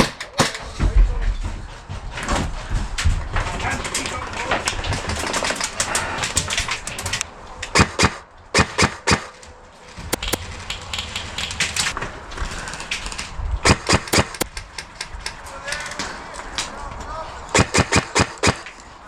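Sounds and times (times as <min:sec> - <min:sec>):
airsoft guns firing: 0:07.7 - 0:09.4, 0:13.6 - 0:14.5, 0:17.5 - 0:18.8.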